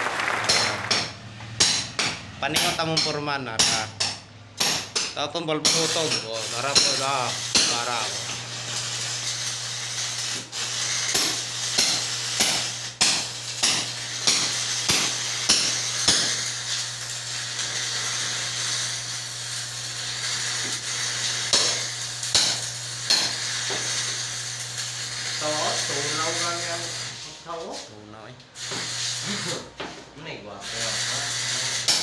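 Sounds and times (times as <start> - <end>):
welding crackling hiss: 0.0 - 5.0, 5.6 - 29.8, 30.6 - 32.0
welding machine hum: 0.0 - 29.8, 30.6 - 32.0
sharp metallic taps: 0.5 - 6.2.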